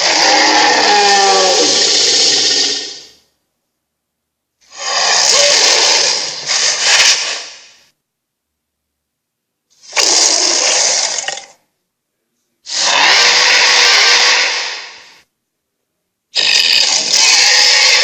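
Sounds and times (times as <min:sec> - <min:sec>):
raspy monster growls: 0:00.0 - 0:03.2, 0:04.7 - 0:07.0, 0:09.8 - 0:11.6, 0:16.4 - 0:18.0.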